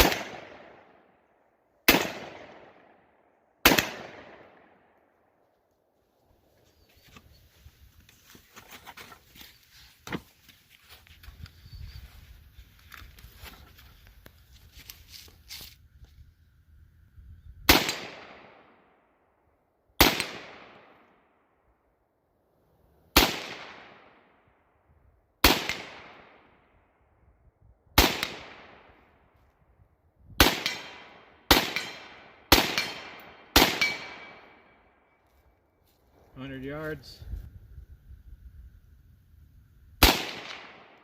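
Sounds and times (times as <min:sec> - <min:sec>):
rifle shots with echo: 0:00.0 - 0:05.1, 0:17.7 - 0:19.0, 0:20.0 - 0:21.4, 0:23.2 - 0:24.4, 0:25.4 - 0:26.7, 0:28.0 - 0:29.1, 0:30.4 - 0:34.9, 0:40.0 - 0:41.0.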